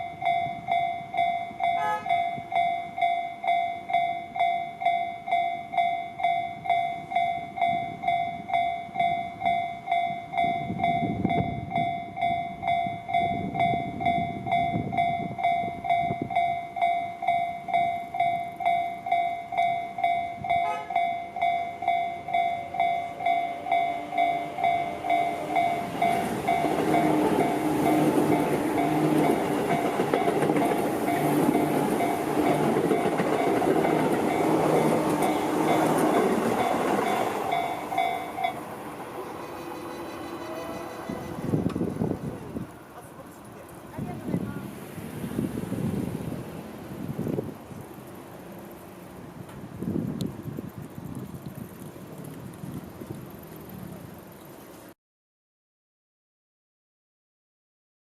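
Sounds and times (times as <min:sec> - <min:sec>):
level crossing warning bell: 0:00.0 - 0:41.6
electric train passing: 0:00.0 - 0:54.7.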